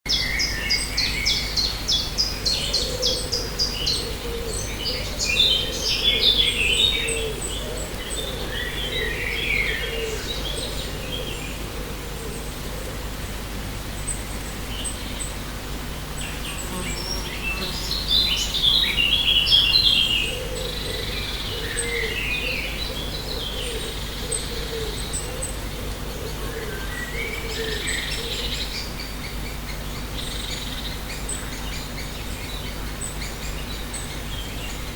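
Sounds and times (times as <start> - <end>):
birds singing and chirping: 0.1 - 34.9
low background noise: 0.1 - 34.9.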